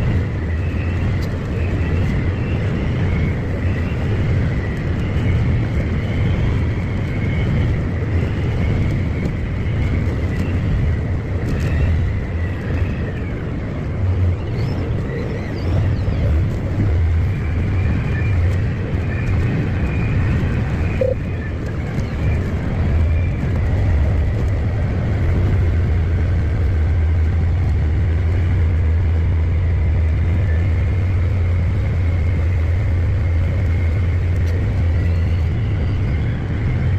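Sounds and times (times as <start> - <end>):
tractor engine drone: 0.0 - 36.9
faint high whine: 17.1 - 21.8.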